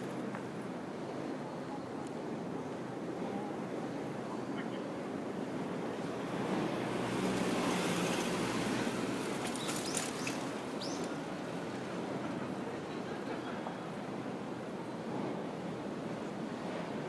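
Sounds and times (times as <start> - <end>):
city background noise: 0.0 - 17.0.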